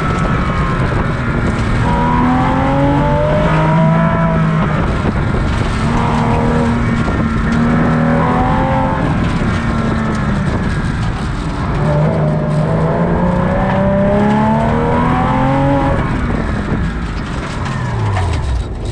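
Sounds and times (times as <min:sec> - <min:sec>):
car engine accelerating hard: 0:00.0 - 0:18.9.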